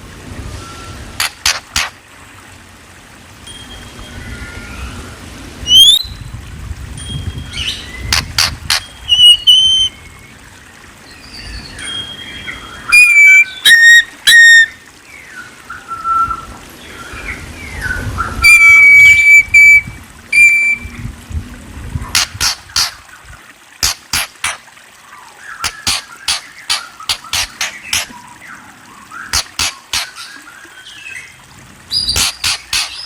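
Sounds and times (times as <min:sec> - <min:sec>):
sharp clicking chip notes: 0:01.2 - 0:02.0, 0:23.8 - 0:24.7, 0:25.6 - 0:28.1, 0:29.4 - 0:30.2, 0:32.2 - 0:33.0
songbird whistled notes: 0:05.7 - 0:06.2, 0:08.8 - 0:10.0, 0:11.4 - 0:16.5, 0:18.2 - 0:20.9.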